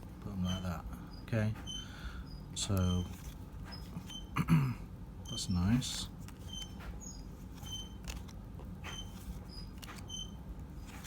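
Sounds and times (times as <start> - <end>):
cards clicking and rustling: 2.6 - 4.2, 5.8 - 11.0.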